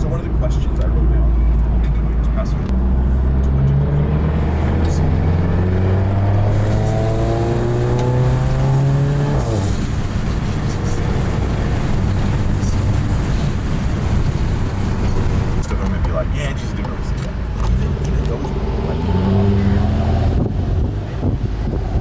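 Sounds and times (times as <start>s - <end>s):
road and wind noise: 0.0s - 22.0s
car engine revving hard: 2.7s - 22.0s.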